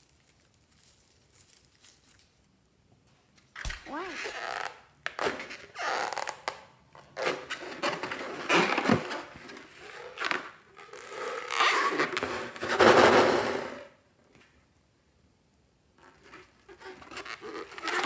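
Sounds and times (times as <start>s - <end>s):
balloon scraping and rubbing: 7.1s - 13.1s, 16.7s - 18.0s.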